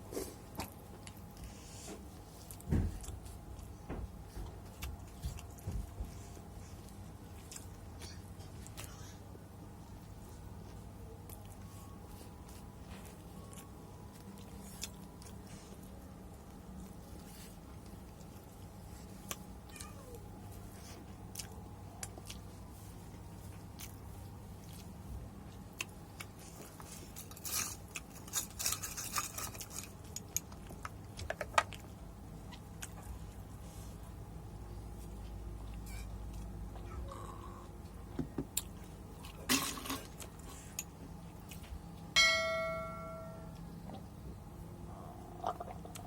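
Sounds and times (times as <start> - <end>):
person chewing chicken: 20.7 - 28.2, 45.3 - 46.0.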